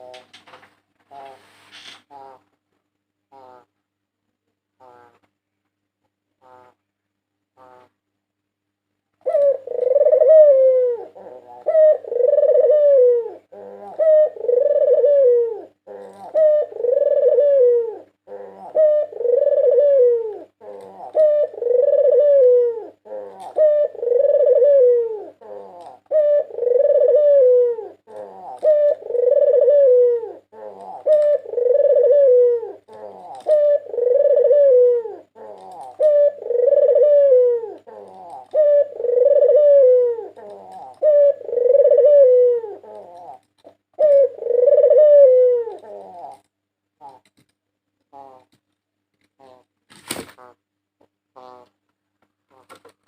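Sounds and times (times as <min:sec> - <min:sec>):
dove cooing: 0:00.0 - 0:00.4, 0:01.1 - 0:02.4, 0:09.2 - 0:47.4, 0:48.1 - 0:48.6, 0:49.4 - 0:49.7, 0:50.4 - 0:51.8.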